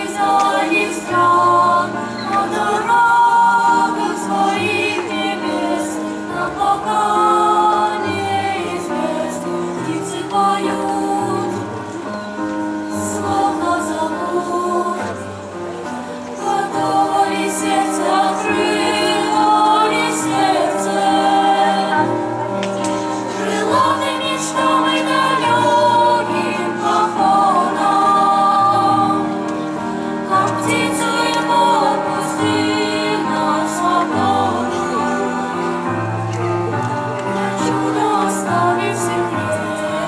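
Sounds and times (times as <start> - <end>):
choir singing: 0.0 - 40.0.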